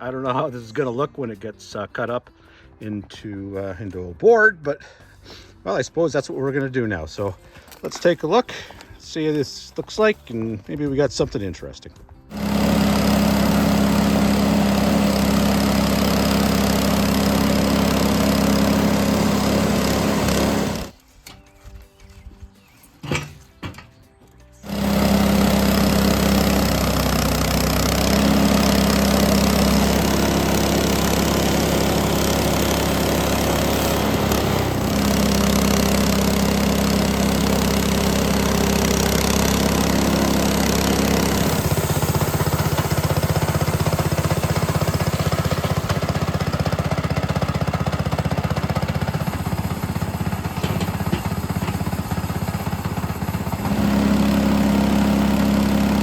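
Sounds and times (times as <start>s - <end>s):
bandsaw mill sawing wood: 12.3s - 21.0s, 24.6s - 56.0s.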